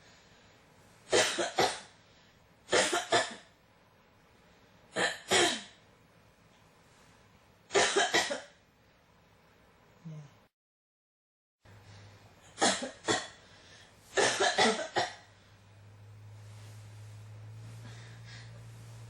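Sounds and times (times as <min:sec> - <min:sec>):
person coughing: 0:01.1 - 0:01.9, 0:02.7 - 0:03.5, 0:05.0 - 0:05.8, 0:07.8 - 0:08.5, 0:12.6 - 0:13.4, 0:14.2 - 0:15.3.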